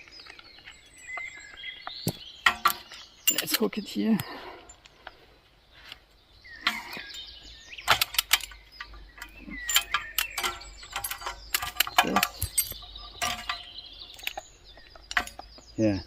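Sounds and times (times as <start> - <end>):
birds chirping: 0.0 - 16.0
metal chain clinking and rattling: 0.3 - 3.8, 6.6 - 15.6.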